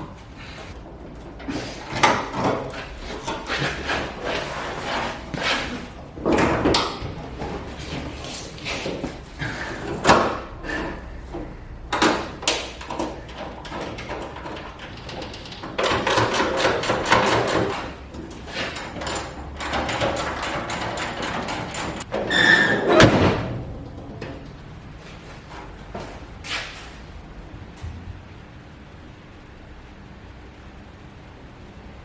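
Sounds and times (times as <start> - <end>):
tools and parts clattering: 11.3 - 23.4.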